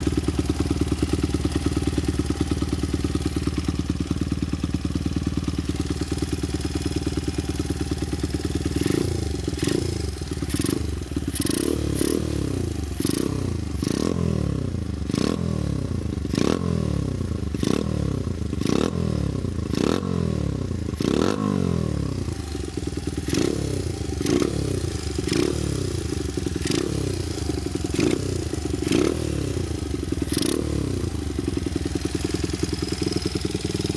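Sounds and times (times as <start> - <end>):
motorcycle engine idling: 0.0 - 33.9
engine revving in throttle blips: 8.8 - 22.2, 27.9 - 29.7, 30.3 - 31.1.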